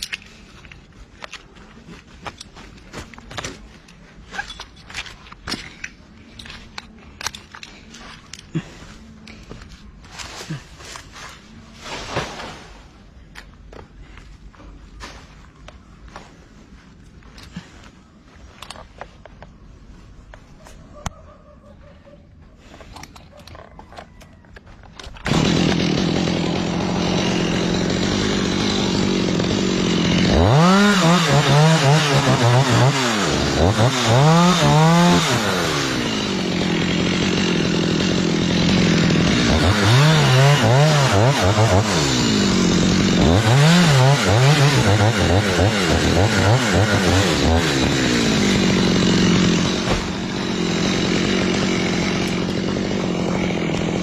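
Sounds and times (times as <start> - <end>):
chainsaw engine revving: 25.0 - 54.0.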